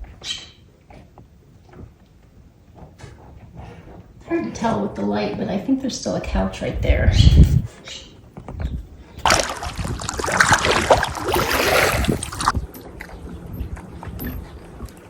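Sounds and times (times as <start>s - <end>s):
wind rumble on microphone: 6.1s - 7.8s, 8.4s - 15.0s
paddle strokes splashing water: 9.2s - 12.6s.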